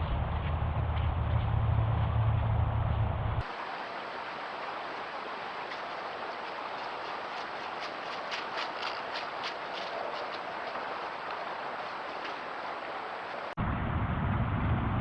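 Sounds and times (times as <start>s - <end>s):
footfalls crunching dry leaves: 3.4s - 13.6s
steady recording hiss: 3.4s - 13.6s.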